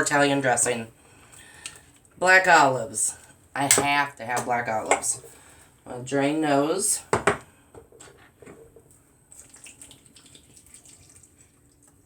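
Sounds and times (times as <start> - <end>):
brine trickling and dripping: 8.8 - 12.0.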